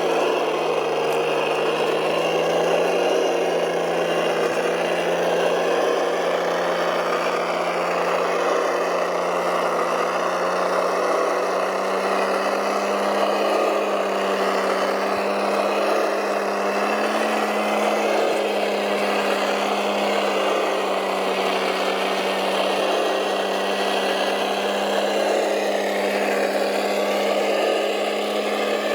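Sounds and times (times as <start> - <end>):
model truck engine drone: 0.0 - 28.9.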